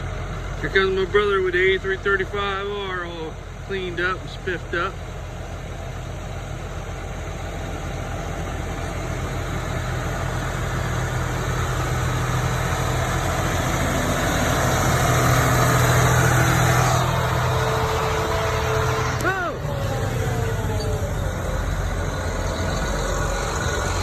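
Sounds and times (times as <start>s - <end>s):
tractor diesel engine running: 0.0s - 24.0s.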